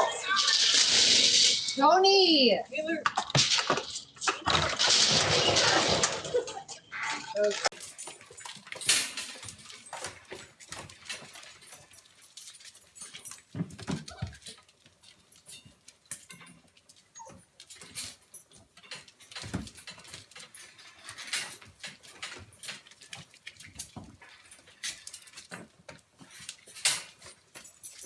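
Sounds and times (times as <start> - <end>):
animal clicking and pattering: 7.7 - 28.0.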